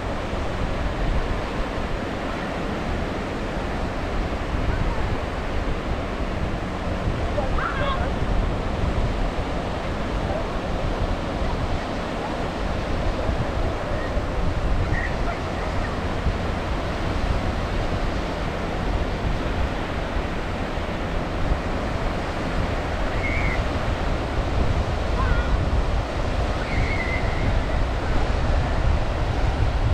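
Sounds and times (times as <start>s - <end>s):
surf waves breaking: 0.0s - 29.9s.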